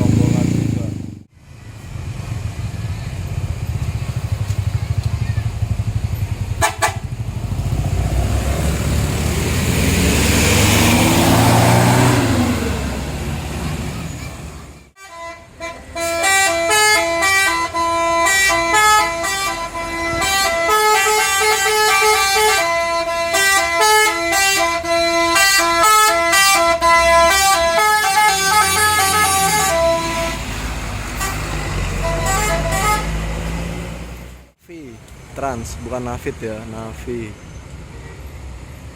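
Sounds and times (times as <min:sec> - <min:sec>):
large vehicle engine passing: 0:00.0 - 0:14.8, 0:28.5 - 0:34.6
bus horn playing a tune: 0:06.6 - 0:07.2, 0:14.9 - 0:33.6.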